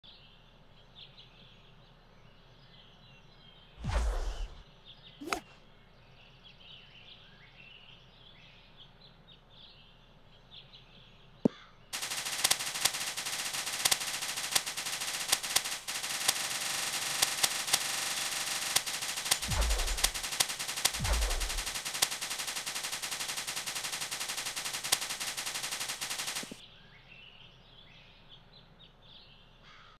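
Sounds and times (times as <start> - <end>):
sharp click: 12.0 - 26.6.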